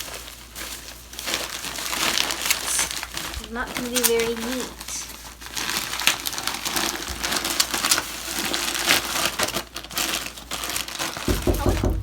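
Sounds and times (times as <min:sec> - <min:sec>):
packaging crinkling: 0:00.0 - 0:12.0.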